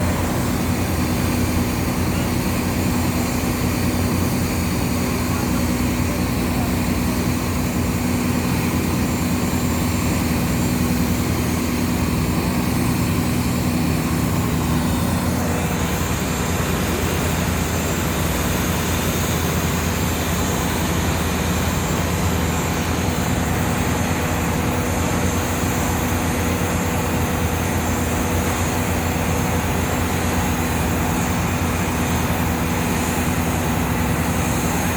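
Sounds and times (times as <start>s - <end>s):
boat engine droning: 0.0s - 34.9s.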